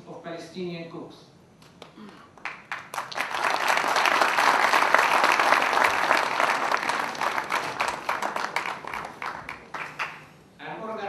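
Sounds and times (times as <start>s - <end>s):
audience applauding: 2.3s - 10.4s.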